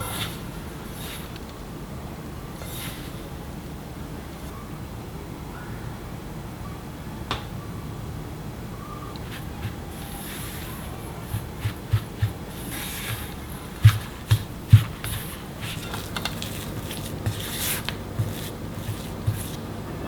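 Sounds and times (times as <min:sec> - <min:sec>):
kitchen utensils knocking and scraping: 0:09.2 - 0:19.6.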